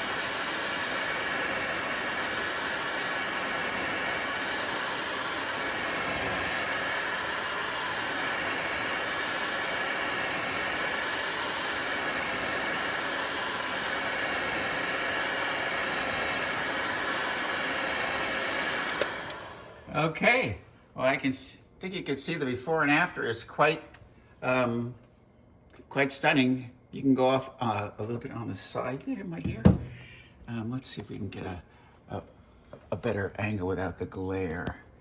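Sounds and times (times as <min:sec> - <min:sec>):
heat gun blowing air: 0:00.0 - 0:20.0.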